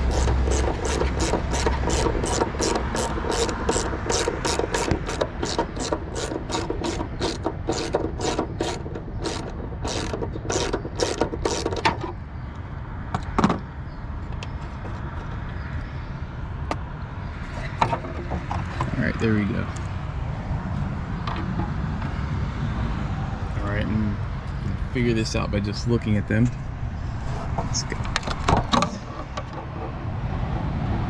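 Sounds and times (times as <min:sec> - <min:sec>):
socket ratchet clicking: 0:00.0 - 0:11.9.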